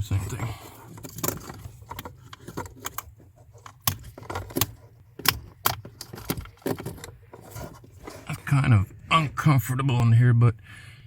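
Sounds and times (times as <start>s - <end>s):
plastic connectors clicking and rattling: 0.2s - 8.3s.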